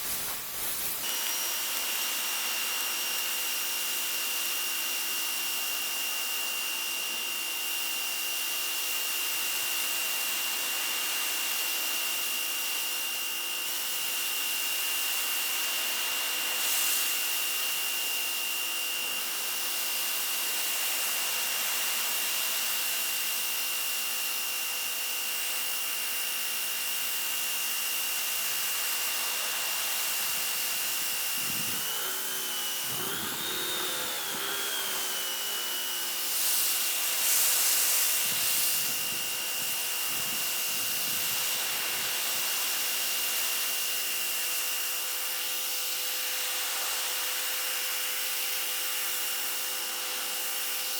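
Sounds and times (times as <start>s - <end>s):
water spray hiss: 0.0s - 1.1s, 16.3s - 17.6s, 36.2s - 43.8s
pressure washer motor whine: 0.0s - 50.9s.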